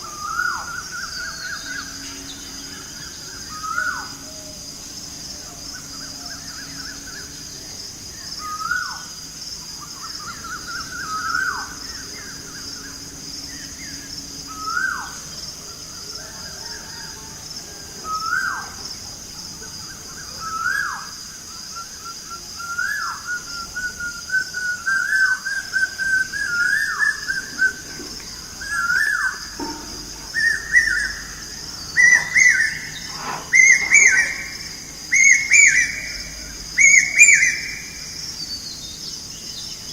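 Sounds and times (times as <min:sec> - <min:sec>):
steady high-pitched drone: 0:00.0 - 0:20.4, 0:21.2 - 0:38.7
koel whistled calls: 0:30.4 - 0:38.0.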